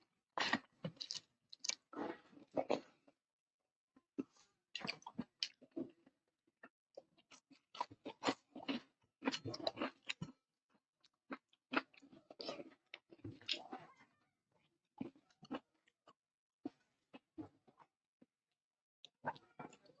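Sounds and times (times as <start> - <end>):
person chewing crunchy food: 0.4 - 3.0, 4.2 - 6.1, 7.2 - 10.4, 11.0 - 14.1, 15.0 - 15.8.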